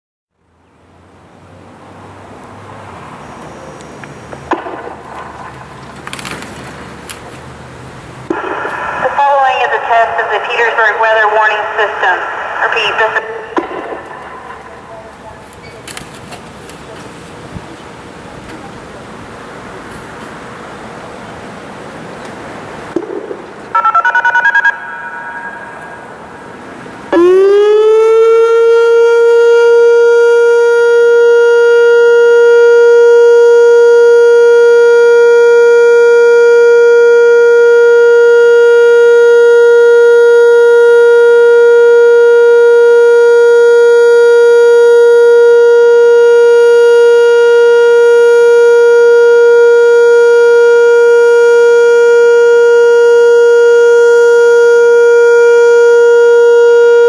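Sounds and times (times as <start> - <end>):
warning siren steady tone: 3.1 - 6.0, 8.2 - 15.8, 22.9 - 57.0.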